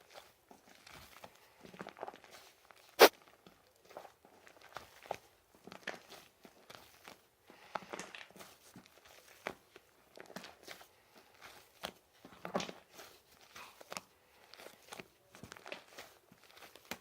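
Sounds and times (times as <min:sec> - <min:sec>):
slime popping and crackling: 0:14.6 - 0:17.0.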